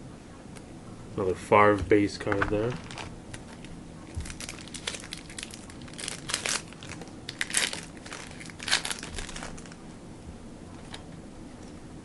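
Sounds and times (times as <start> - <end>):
trading card wrapper crinkling: 2.3 - 9.8.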